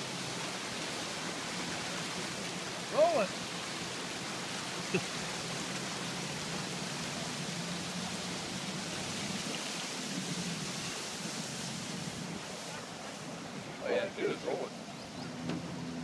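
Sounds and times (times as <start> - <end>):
water rushing: 0.0 - 16.0.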